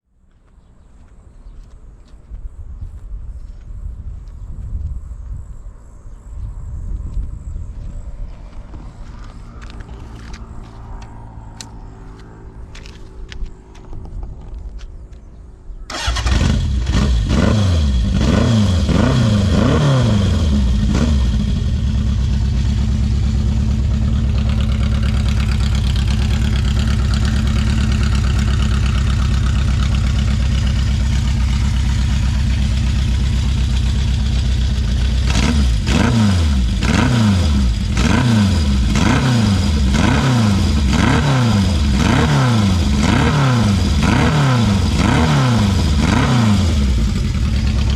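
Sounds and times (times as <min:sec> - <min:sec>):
motorcycle idling: 0:15.9 - 0:18.2, 0:20.2 - 0:47.9
motorcycle engine revving: 0:15.9 - 0:47.9.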